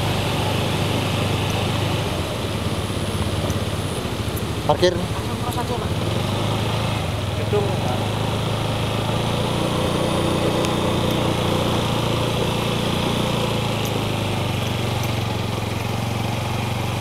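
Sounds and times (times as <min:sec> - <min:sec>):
vehicle engine running: 0:00.0 - 0:17.0.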